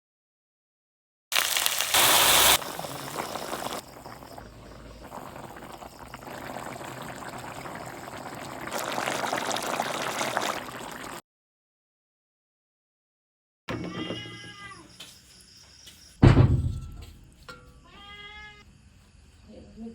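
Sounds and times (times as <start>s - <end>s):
liquid hissing in a pan: 1.4s - 11.2s.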